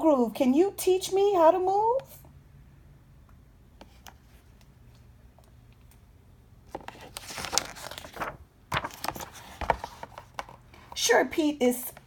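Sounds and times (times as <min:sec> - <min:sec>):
paper page rustling: 0:06.7 - 0:11.0.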